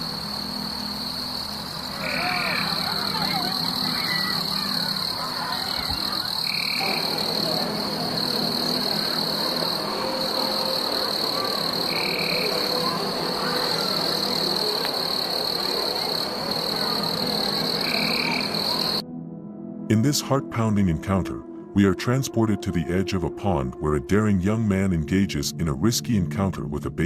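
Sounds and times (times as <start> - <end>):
frogs croaking: 0.0 - 19.0
high-pitched insect trill: 0.0 - 19.0.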